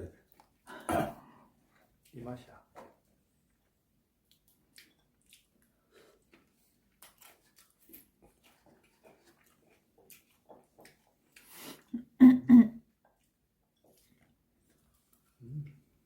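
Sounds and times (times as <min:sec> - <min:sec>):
loud coughs: 0:00.8 - 0:01.2
chewing and mouth clicks: 0:03.5 - 0:11.9, 0:12.9 - 0:16.0.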